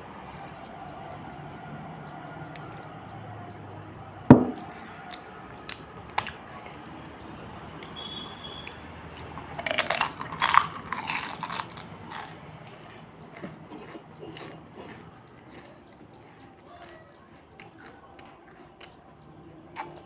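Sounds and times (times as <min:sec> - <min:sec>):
crunching and chewing crisp food: 0:00.0 - 0:20.0
sharp knock: 0:04.3 - 0:04.7.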